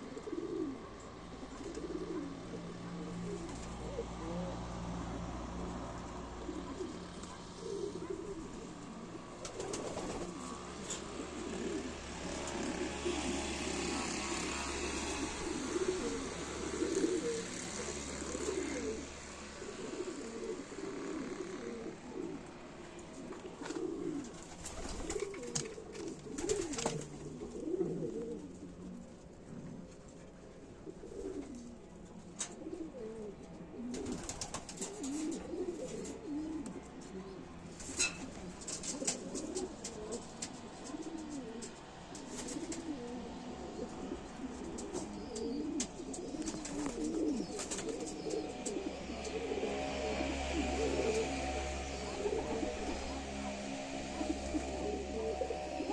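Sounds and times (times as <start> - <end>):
pigeons cooing: 0.0 - 55.9.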